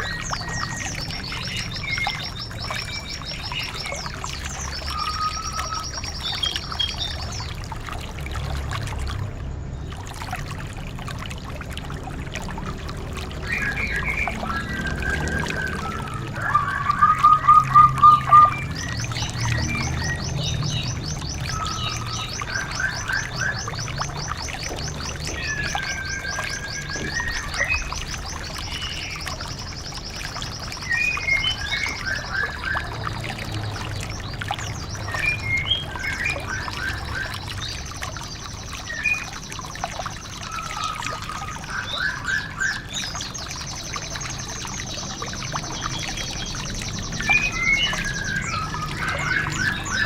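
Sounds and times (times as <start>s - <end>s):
loud rapid bird trill: 0.0s - 7.5s, 13.4s - 39.4s, 45.7s - 50.0s
songbirds singing: 0.0s - 50.0s.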